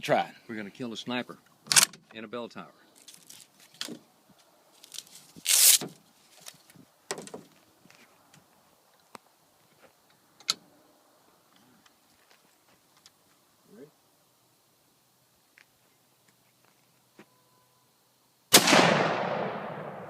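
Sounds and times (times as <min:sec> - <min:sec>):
rifle clicks and knocks: 0:01.7 - 0:02.1.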